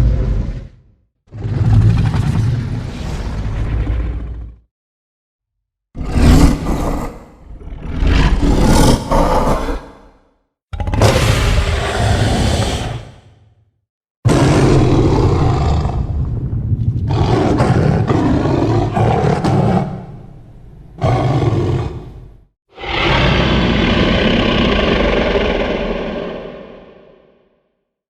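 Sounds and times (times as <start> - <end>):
monster growling roars: 6.0 - 10.2, 10.8 - 13.4, 14.3 - 20.2, 21.0 - 22.2, 22.8 - 27.5.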